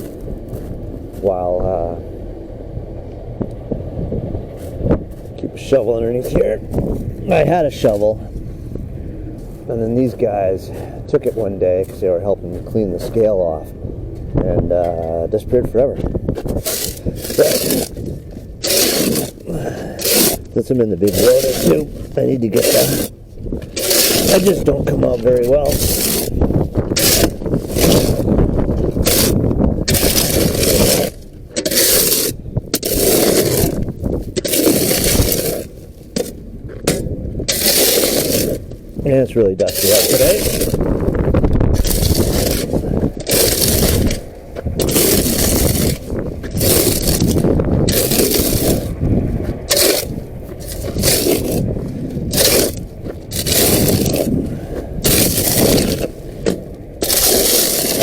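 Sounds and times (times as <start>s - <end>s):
wind rumble on microphone: 0.0s - 58.0s
shovel scraping through dried mud: 5.6s - 8.3s, 16.4s - 41.0s, 41.8s - 58.0s.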